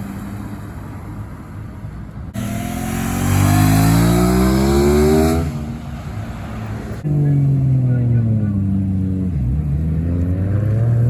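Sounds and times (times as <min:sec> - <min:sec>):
car engine revving hard: 0:02.4 - 0:05.8, 0:09.2 - 0:11.0.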